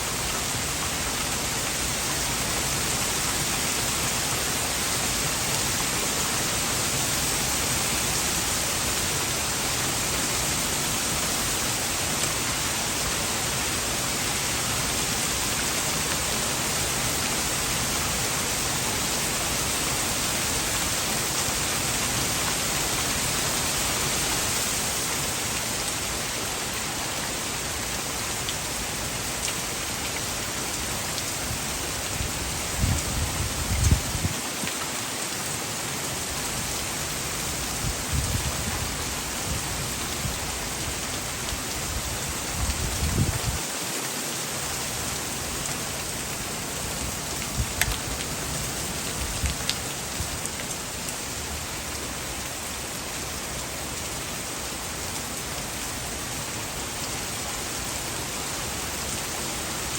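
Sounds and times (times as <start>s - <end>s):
heavy rain pouring: 0.0s - 59.9s.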